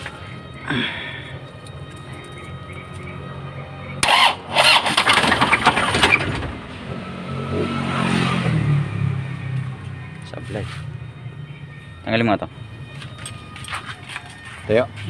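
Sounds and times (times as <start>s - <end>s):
diesel engine starter cranking: 0.0s - 7.6s.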